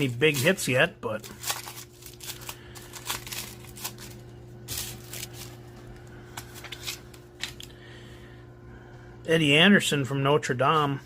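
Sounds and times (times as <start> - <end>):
cards rustling and flicking: 0.0 - 7.6.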